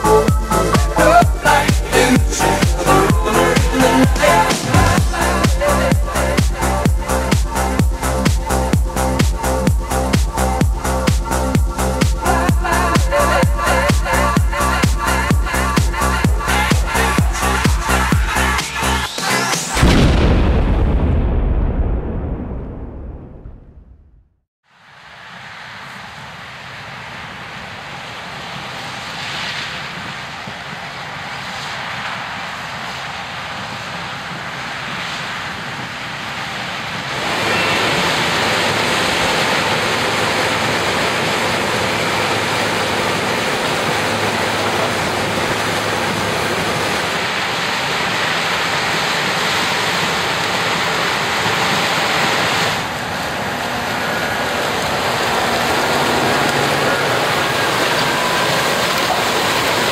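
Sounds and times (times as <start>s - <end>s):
harvesting machinery running: 36.9s - 59.9s.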